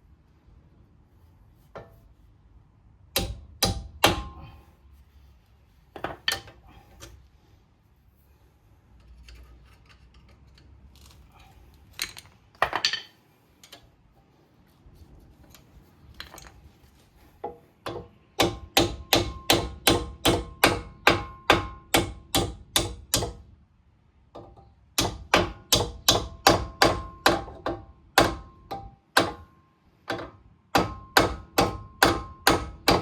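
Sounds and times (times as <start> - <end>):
hammer striking metal: 3.1 - 4.5, 17.9 - 23.4.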